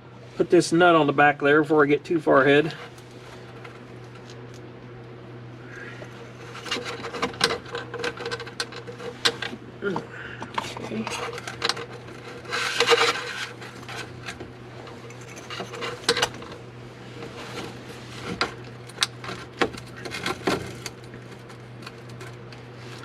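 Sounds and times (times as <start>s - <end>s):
steady low hum: 0.0s - 23.0s
plastic parts rubbing: 10.6s - 14.3s.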